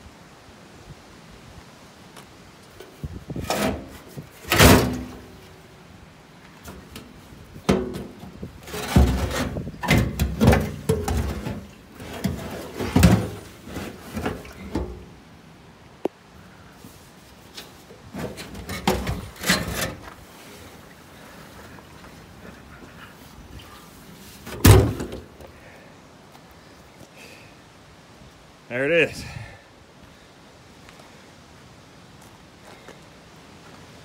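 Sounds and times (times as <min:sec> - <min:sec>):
parts clunking and scraping: 0:02.7 - 0:05.6, 0:06.4 - 0:15.2, 0:17.4 - 0:20.6, 0:21.7 - 0:25.6.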